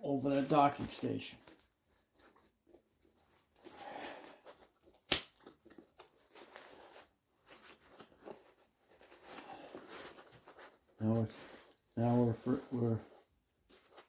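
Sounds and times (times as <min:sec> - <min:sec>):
rubber glove rustling and rubbing: 0:00.0 - 0:14.0.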